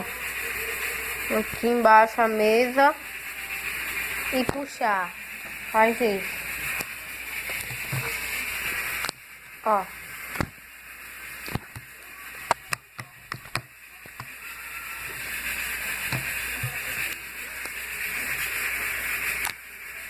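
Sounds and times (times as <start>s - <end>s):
steady hiss: 0.0s - 20.0s
putty squelching pops: 12.5s - 14.3s.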